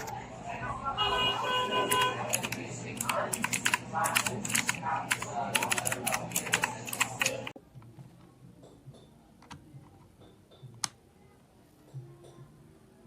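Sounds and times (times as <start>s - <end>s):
mechanical keyboard typing: 1.9s - 7.6s.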